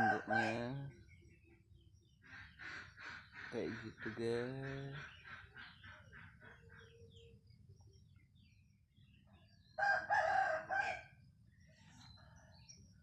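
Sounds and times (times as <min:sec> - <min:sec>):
rooster crowing: 0:00.0 - 0:00.8, 0:09.8 - 0:11.1
faint scattered calls: 0:00.0 - 0:07.8.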